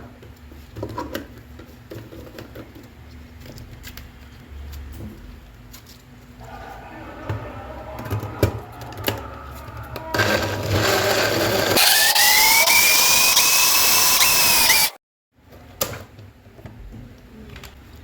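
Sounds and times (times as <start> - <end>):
electric blender whining: 10.1 - 15.0.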